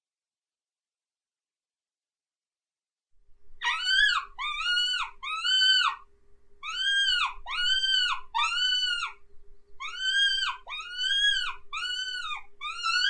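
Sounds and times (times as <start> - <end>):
mouse squeak predator call: 9.8 - 13.0.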